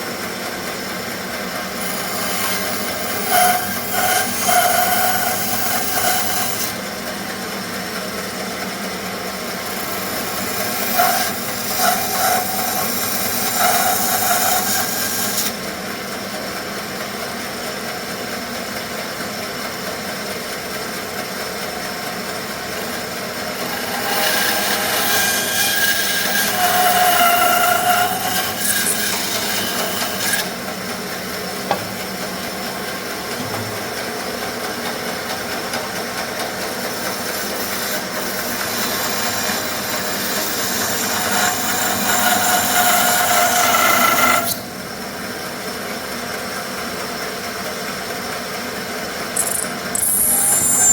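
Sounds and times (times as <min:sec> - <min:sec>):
bandsaw running hum: 0:00.0 - 0:18.4, 0:19.7 - 0:45.7, 0:48.9 - 0:50.9
bandsaw cutting wood: 0:01.7 - 0:06.8, 0:09.6 - 0:15.6, 0:22.7 - 0:30.6, 0:36.7 - 0:44.6, 0:49.4 - 0:50.9.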